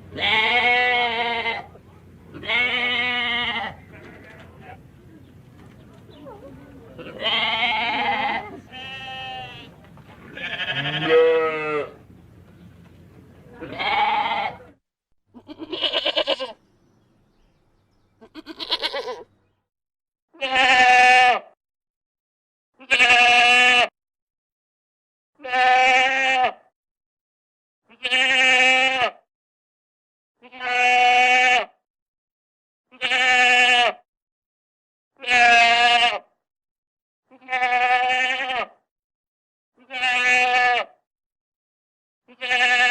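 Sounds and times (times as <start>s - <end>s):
goat bleating: 0.1s - 4.9s, 6.3s - 12.0s, 13.6s - 14.7s, 15.3s - 16.6s, 18.2s - 19.4s, 20.4s - 21.5s, 22.8s - 23.9s, 25.4s - 26.6s, 27.9s - 29.2s, 30.4s - 31.7s, 32.9s - 34.0s, 35.2s - 36.3s, 37.3s - 38.8s, 39.8s - 41.0s, 42.3s - 42.9s.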